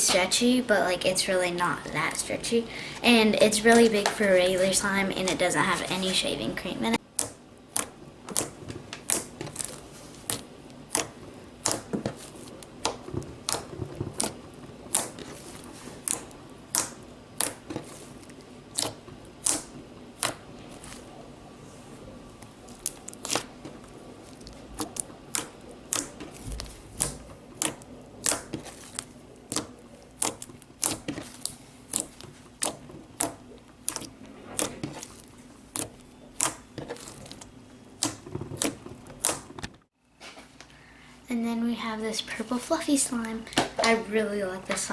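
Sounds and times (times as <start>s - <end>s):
slime clicking and popping: 7.1s - 15.4s, 16.0s - 17.7s, 18.7s - 20.5s, 24.3s - 39.6s.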